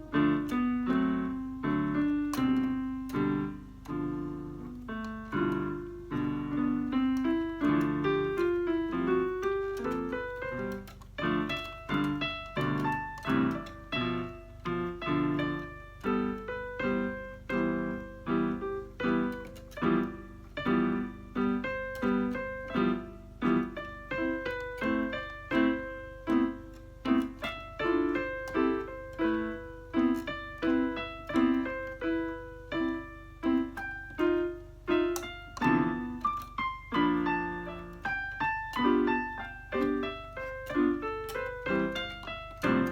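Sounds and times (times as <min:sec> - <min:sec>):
electronic keyboard playing piano notes: 0:00.0 - 0:42.9.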